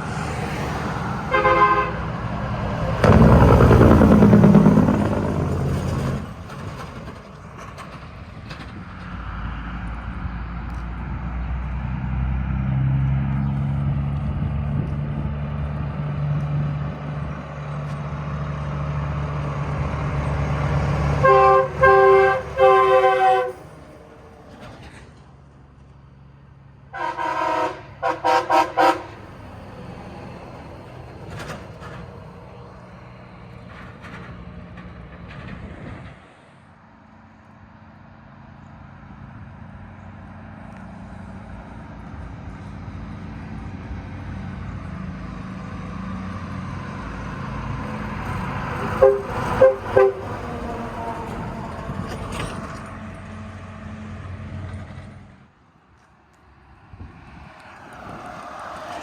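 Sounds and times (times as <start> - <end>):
locomotive engine drone: 0.0 - 59.0
second train horn blasts: 1.3 - 2.2, 21.1 - 23.8, 26.9 - 29.2, 48.8 - 50.8
train air horn blasts: 1.3 - 2.2, 21.1 - 23.8, 26.9 - 29.2, 48.8 - 50.5.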